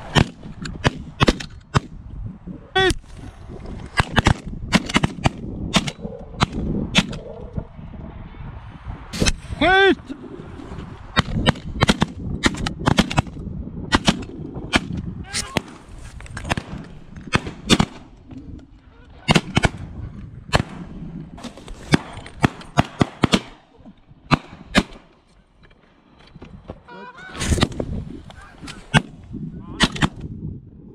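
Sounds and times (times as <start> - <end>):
shotgun shots: 4.0 - 7.2, 11.2 - 13.3, 13.9 - 18.1, 19.3 - 19.8, 21.9 - 23.6, 24.3 - 25.1, 29.8 - 30.2
geese honking: 26.8 - 27.4, 28.3 - 28.9.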